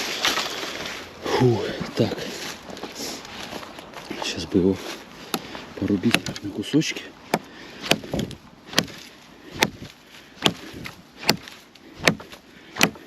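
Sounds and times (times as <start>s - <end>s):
axe chopping wood: 5.3s - 6.4s, 7.3s - 13.0s.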